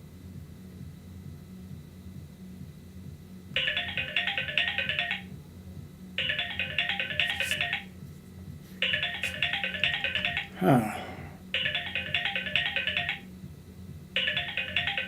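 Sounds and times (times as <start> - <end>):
low steady hum: 0.0 - 15.0
phone ringtone: 3.6 - 5.4, 6.2 - 8.0, 8.8 - 13.3, 14.2 - 15.0.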